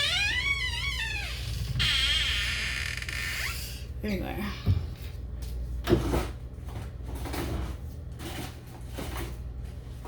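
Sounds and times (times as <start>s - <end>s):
boxes and plastic bags handled: 5.5s - 10.0s.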